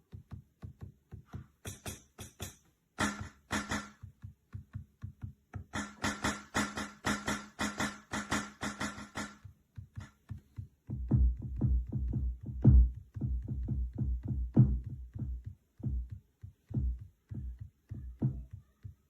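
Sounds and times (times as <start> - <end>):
electronic drum thumps and hits: 3.0 - 4.0, 5.0 - 10.1, 10.9 - 18.6.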